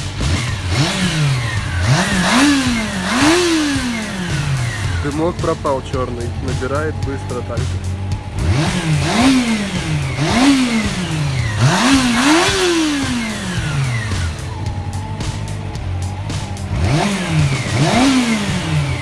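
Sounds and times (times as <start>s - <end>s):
motorcycle engine idling: 0.0s - 19.0s
motorcycle engine revving: 0.0s - 19.0s.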